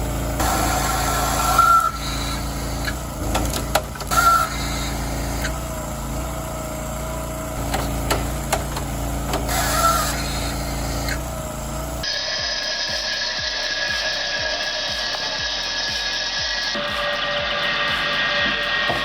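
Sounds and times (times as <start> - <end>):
high-pitched motor whine: 0.0 - 19.0
low pulsing: 0.0 - 19.0
machinery running: 0.0 - 19.0
sharp cracks and knocks: 2.9 - 4.3, 7.6 - 9.5.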